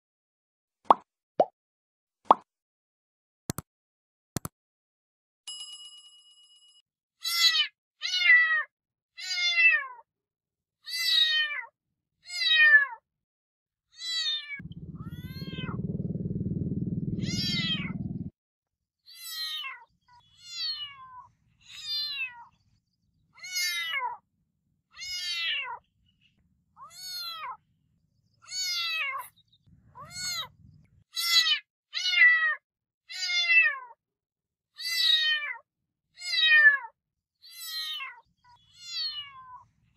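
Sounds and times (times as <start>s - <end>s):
cat meowing: 7.2s - 10.0s, 12.3s - 13.0s, 17.2s - 18.0s, 19.1s - 22.5s, 23.4s - 24.2s, 24.9s - 25.8s, 26.8s - 27.6s, 28.4s - 29.4s, 30.0s - 30.5s, 31.2s - 34.0s, 34.8s - 35.6s, 36.2s - 39.6s
cat purring: 14.6s - 18.3s.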